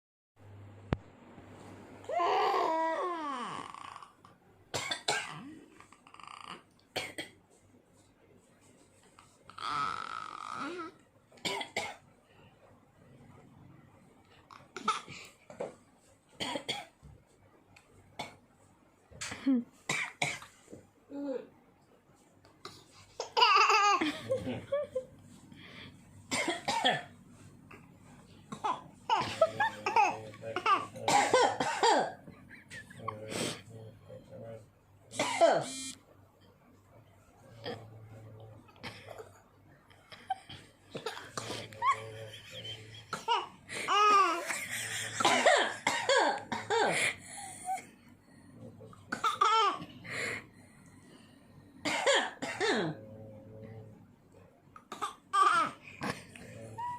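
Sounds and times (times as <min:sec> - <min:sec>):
baby coughing: 0:04.8 - 0:05.4, 0:26.3 - 0:27.1, 0:28.5 - 0:32.2, 0:35.2 - 0:35.7, 0:45.2 - 0:47.0, 0:49.1 - 0:49.8, 0:51.9 - 0:53.0, 0:54.9 - 0:56.2
baby laughing: 0:23.2 - 0:24.1, 0:28.6 - 0:30.9, 0:41.4 - 0:45.2
people laughing: 0:24.0 - 0:25.0, 0:29.2 - 0:30.6, 0:32.3 - 0:33.5, 0:41.4 - 0:43.1
woman coughing: 0:31.1 - 0:32.2, 0:35.2 - 0:35.8, 0:45.2 - 0:47.0.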